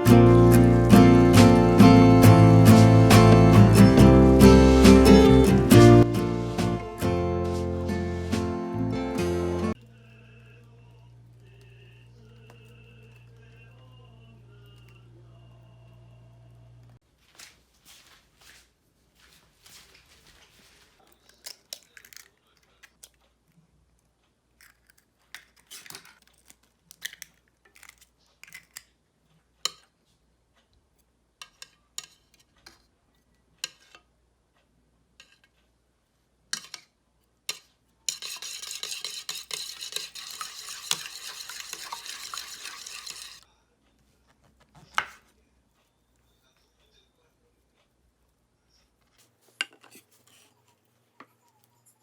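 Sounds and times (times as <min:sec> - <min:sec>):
utensils clinking against dishes: 0:37.5 - 0:43.4.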